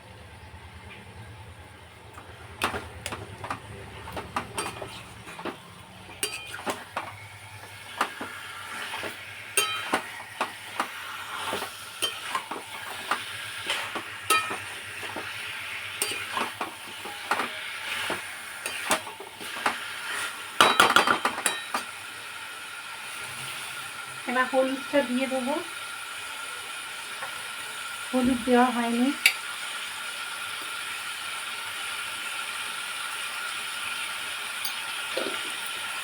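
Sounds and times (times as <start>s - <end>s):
meat sizzling in a pan: 2.6s - 36.0s
metal spatula scraping a pan: 3.4s - 21.9s
spatula clinking against pan: 4.4s - 7.2s, 9.6s - 11.0s, 12.0s - 15.3s, 16.0s - 17.7s, 20.6s - 21.9s.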